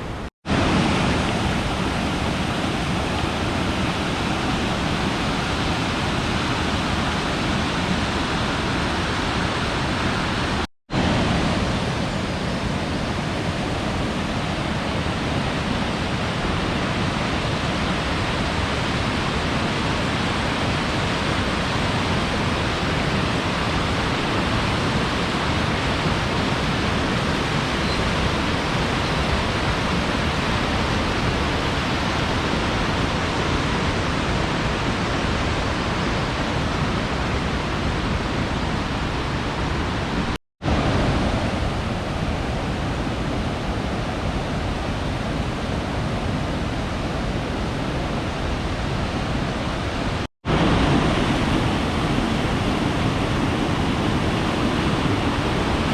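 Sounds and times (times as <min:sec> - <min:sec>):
fast-flowing mountain water rushing: 0:00.0 - 0:55.9.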